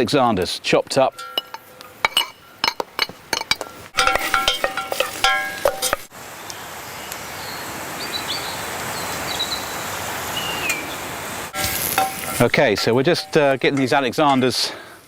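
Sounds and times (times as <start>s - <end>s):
utensil clinking against cookware: 1.1s - 6.1s, 11.6s - 14.7s
oil sizzling in a pan: 3.7s - 6.1s, 8.7s - 13.4s.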